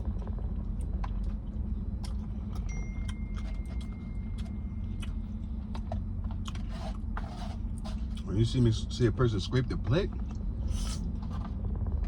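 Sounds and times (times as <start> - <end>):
steady low hum: 0.0 - 12.0
fork scraping food container: 6.5 - 8.2.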